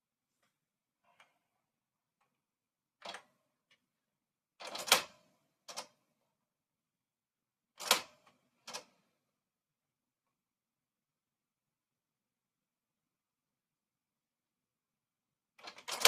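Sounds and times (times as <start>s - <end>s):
typewriter clacking: 15.6s - 16.0s.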